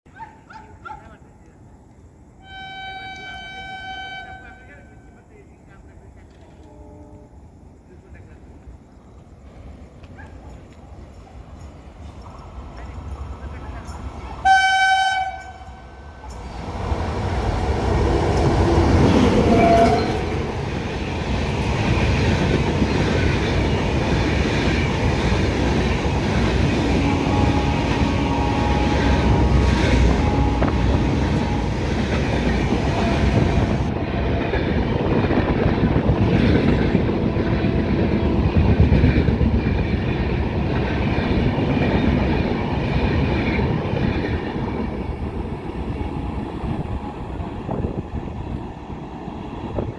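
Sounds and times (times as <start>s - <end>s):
locomotive horn blast: 2.4s - 5.1s, 6.6s - 7.4s, 14.4s - 16.2s, 17.6s - 20.6s, 26.0s - 34.3s
train wheels rumbling and clattering: 8.0s - 49.9s.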